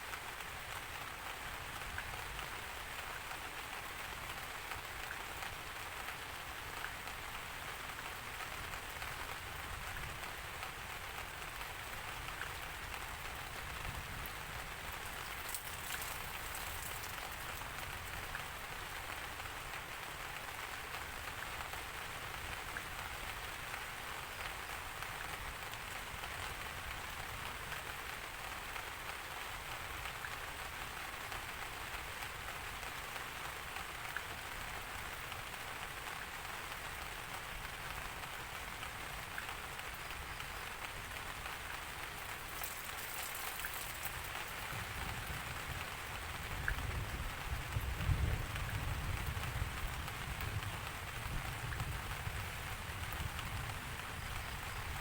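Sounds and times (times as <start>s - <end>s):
rain pattering on a surface: 0.0s - 55.0s
low rumble of thunder: 44.6s - 54.9s.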